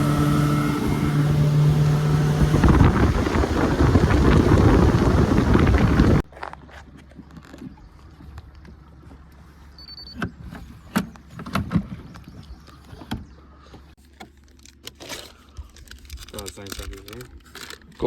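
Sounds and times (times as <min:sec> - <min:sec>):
high beep: 0:09.8 - 0:10.2.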